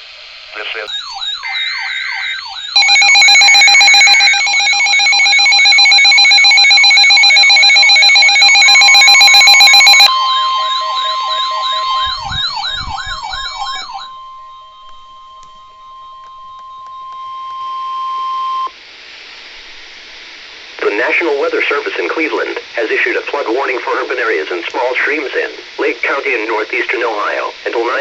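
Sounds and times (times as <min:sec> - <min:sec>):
long steady alert tone: 0:00.8 - 0:18.7
wailing siren-like sweeps: 0:00.9 - 0:18.7.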